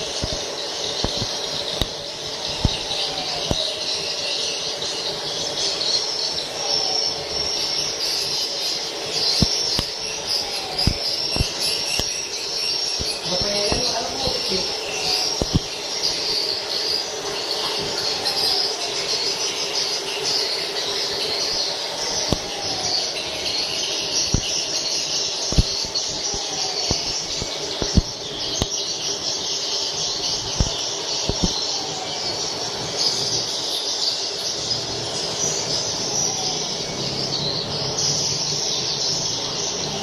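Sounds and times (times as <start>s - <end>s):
sharp clicks: 0.0s - 3.7s, 9.3s - 16.4s, 22.2s - 22.6s, 24.2s - 24.8s, 25.4s - 28.8s, 30.2s - 31.6s
swiftlets twittering: 0.0s - 38.3s
low hum: 20.4s - 32.9s.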